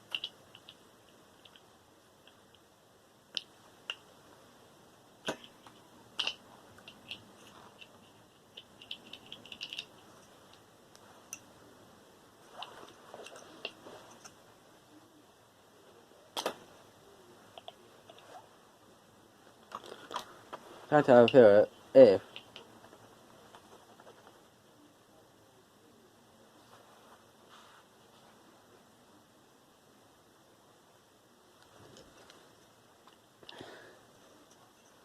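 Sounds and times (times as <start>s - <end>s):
plastic and metal parts clicking: 5.3s - 10.6s.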